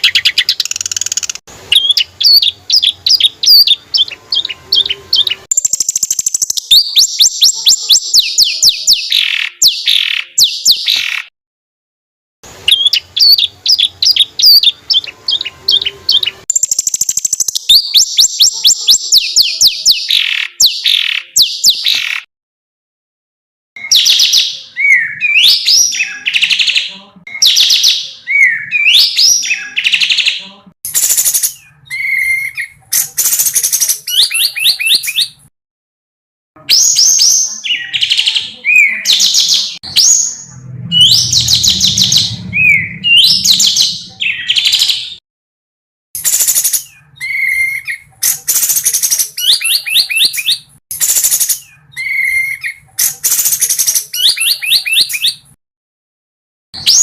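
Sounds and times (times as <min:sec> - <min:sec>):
songbird singing rapid high notes: 0:00.0 - 0:11.3, 0:12.6 - 0:22.3, 0:23.8 - 0:35.4, 0:46.2 - 0:55.5.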